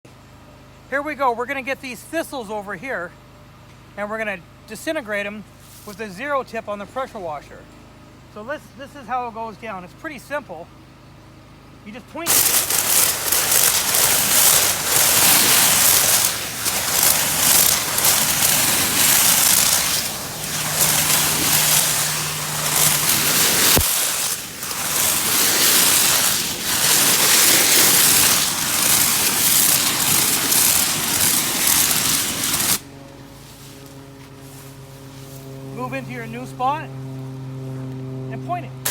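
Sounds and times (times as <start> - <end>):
pressure washer motor humming: 12.2 - 38.9
pressure washer spray: 12.3 - 32.9.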